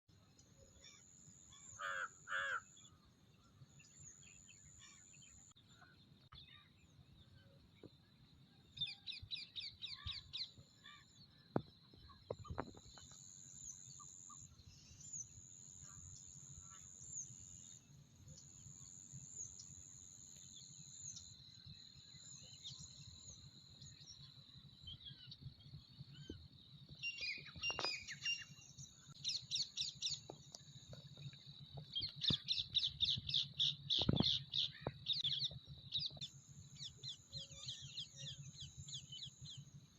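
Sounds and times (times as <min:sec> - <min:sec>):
crows cawing: 0:01.8 - 0:02.7
small birds chirping: 0:24.9 - 0:39.8.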